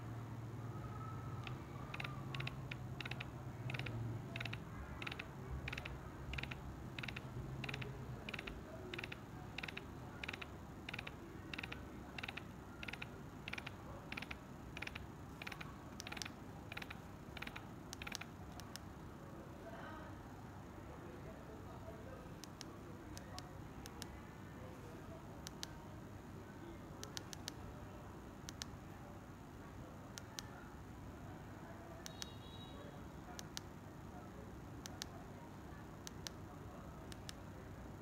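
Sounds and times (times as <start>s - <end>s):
mechanism clicking rhythmically: 1.4s - 18.8s.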